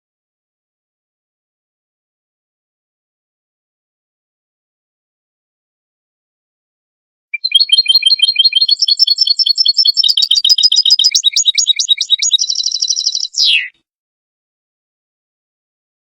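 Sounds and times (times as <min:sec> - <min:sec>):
goldfinch twittering song: 0:07.4 - 0:13.7.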